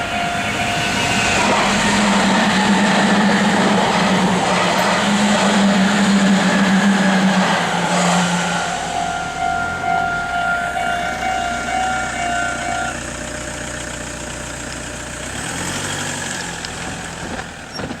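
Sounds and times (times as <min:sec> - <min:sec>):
low rumble: 0:00.0 - 0:13.1
level crossing warning bell: 0:00.0 - 0:13.5
vehicle hum: 0:00.0 - 0:18.0.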